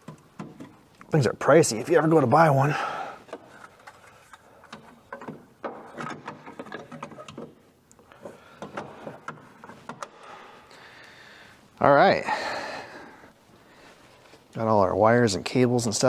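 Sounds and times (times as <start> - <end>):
hands clicking and tapping on parts: 0.0 - 1.1, 3.3 - 10.2.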